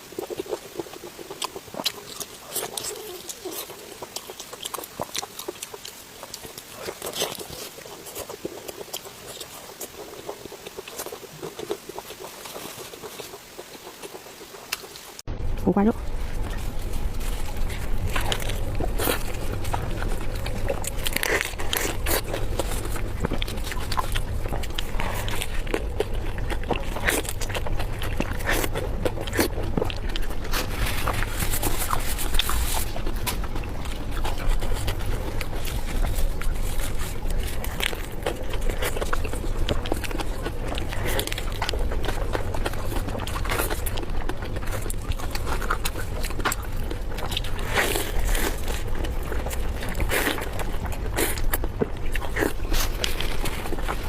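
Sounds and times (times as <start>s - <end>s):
person chewing food: 0.0s - 54.0s
low hum: 15.3s - 54.0s
steady low rumble: 15.3s - 54.0s.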